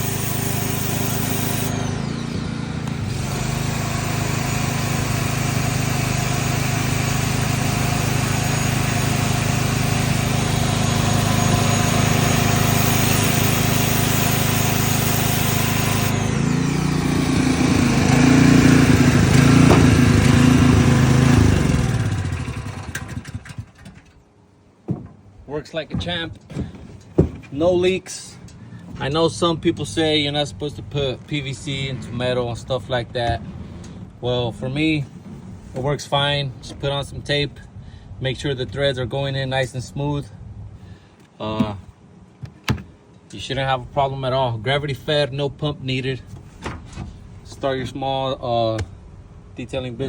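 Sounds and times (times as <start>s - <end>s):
generator engine running: 0.0s - 24.3s.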